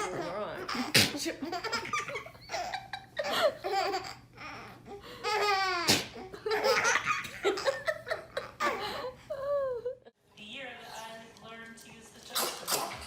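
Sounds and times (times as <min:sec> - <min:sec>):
baby laughing: 0:00.0 - 0:09.8.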